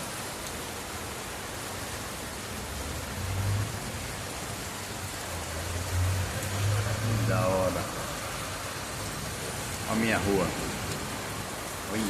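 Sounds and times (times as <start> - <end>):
heavy rain: 0.0 - 12.0.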